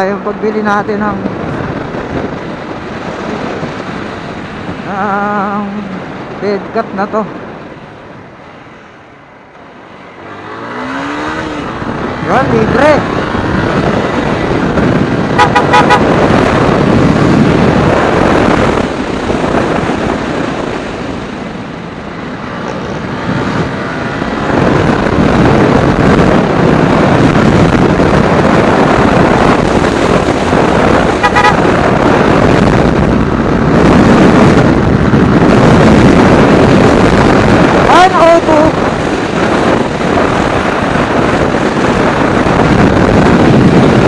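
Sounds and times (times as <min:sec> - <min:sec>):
wind rushing over microphone: 0:00.0 - 0:44.0
motorcycle engine: 0:07.4 - 0:44.0
horn beeping: 0:15.4 - 0:16.2, 0:31.2 - 0:31.7.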